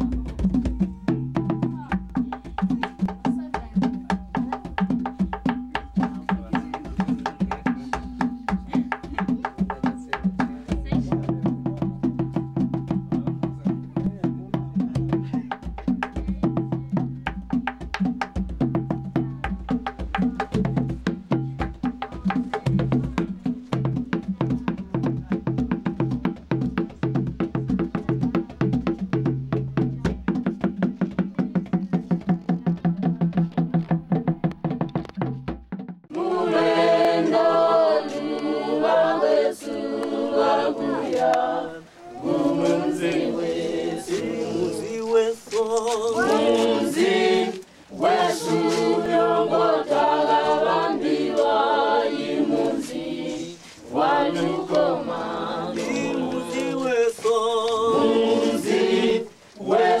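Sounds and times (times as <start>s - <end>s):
fast even clicking beat: 0.0s - 35.9s
choir singing unaccompanied: 36.1s - 60.0s.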